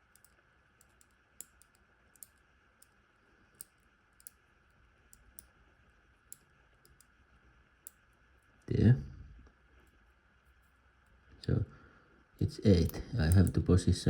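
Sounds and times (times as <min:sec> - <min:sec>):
padlock dial wheels clicking: 0:00.0 - 0:02.4, 0:06.3 - 0:07.1, 0:12.8 - 0:13.6.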